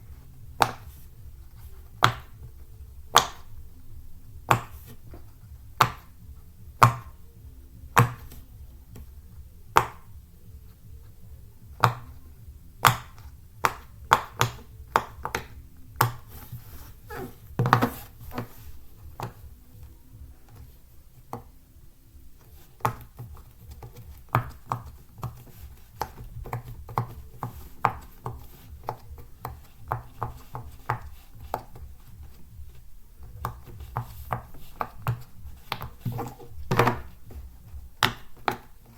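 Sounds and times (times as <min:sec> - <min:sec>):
pop-it fidget toy popping: 0:01.9 - 0:03.6, 0:04.4 - 0:07.2, 0:07.8 - 0:09.0, 0:09.7 - 0:10.2, 0:11.7 - 0:12.2, 0:12.8 - 0:16.4.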